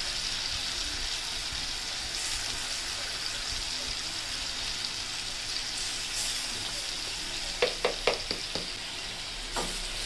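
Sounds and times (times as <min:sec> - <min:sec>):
paste sizzling in hot oil: 0:00.0 - 0:10.0
spoon striking pan: 0:07.6 - 0:08.8.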